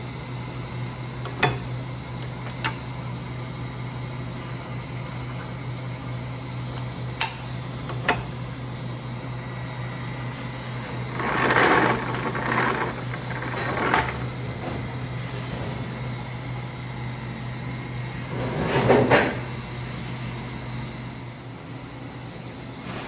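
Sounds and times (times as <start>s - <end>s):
metal parts scraping and rattling: 11.1s - 14.5s.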